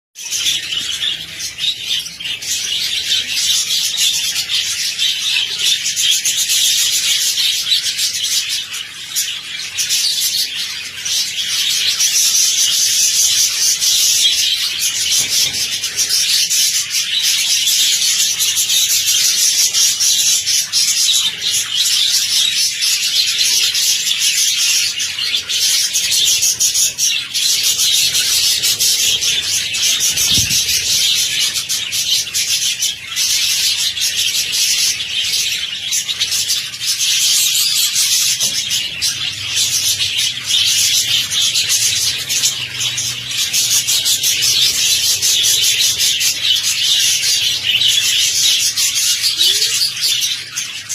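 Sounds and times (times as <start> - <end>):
budgerigars chattering and chirping: 0.2 - 50.9.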